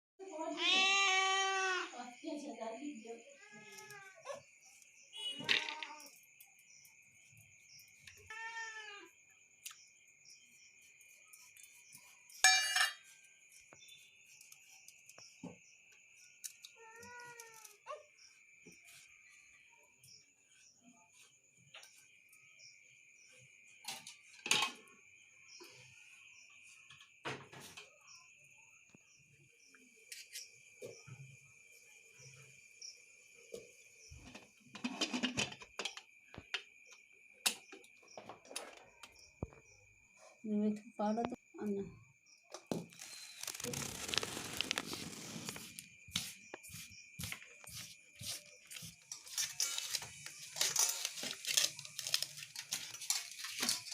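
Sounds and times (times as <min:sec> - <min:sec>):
crickets chirring: 0:00.2 - 0:53.9
cat meowing: 0:00.5 - 0:01.9, 0:08.3 - 0:09.1
kitchen utensils and dishes clattering: 0:12.4 - 0:13.2, 0:23.8 - 0:24.9, 0:34.2 - 0:36.0, 0:48.7 - 0:53.9.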